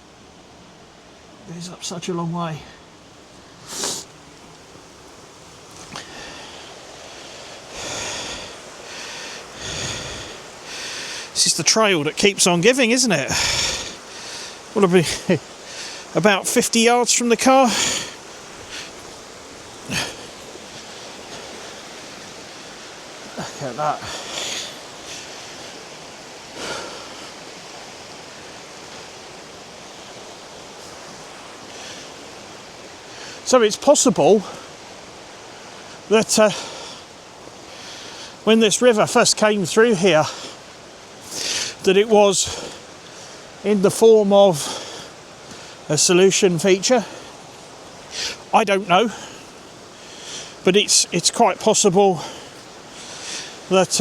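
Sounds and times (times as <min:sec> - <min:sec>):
river rushing: 0:00.0 - 0:54.0
person breathing close to microphone: 0:03.6 - 0:04.1, 0:05.7 - 0:11.4, 0:13.3 - 0:14.8, 0:17.7 - 0:21.9.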